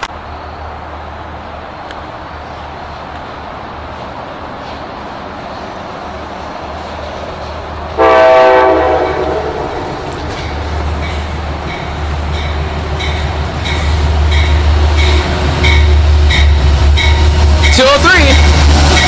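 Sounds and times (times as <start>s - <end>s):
low rumble of train: 0.0s - 19.0s
train horn blast: 8.0s - 10.4s.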